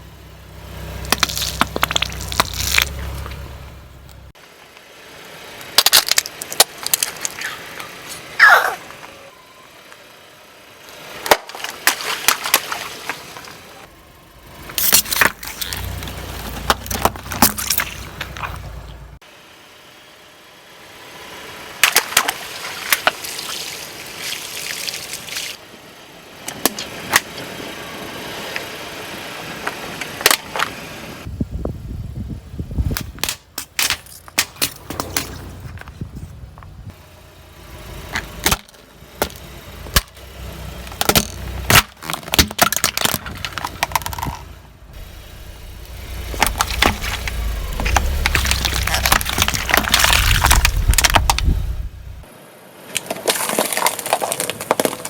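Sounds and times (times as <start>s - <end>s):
car rumble: 0.0s - 54.9s
tyres crushing objects: 1.0s - 3.4s, 5.6s - 7.6s, 11.2s - 13.6s, 14.7s - 18.6s, 40.9s - 52.3s, 53.0s - 55.0s.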